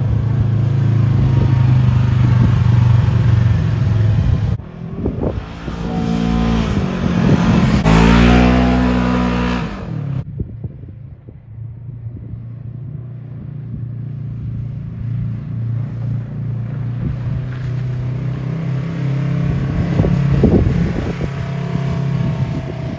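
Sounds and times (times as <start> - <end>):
off-road vehicle engine accelerating: 0.0 - 10.7, 11.6 - 22.9.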